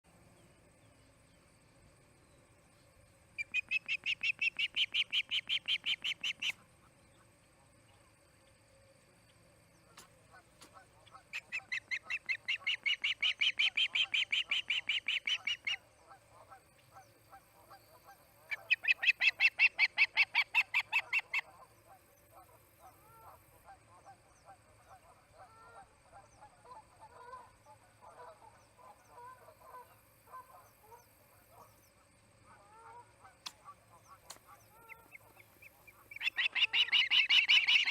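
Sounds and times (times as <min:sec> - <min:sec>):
soft bird chirps: 0:33.4 - 0:37.9.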